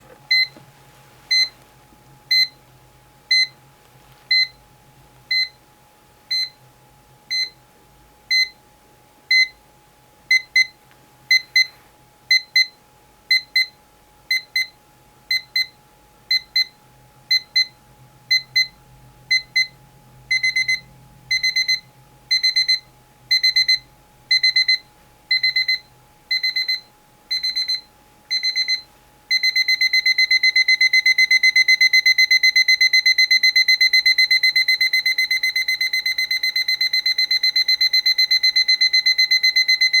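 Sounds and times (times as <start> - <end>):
alarm clock beeping: 20.3 - 40.0.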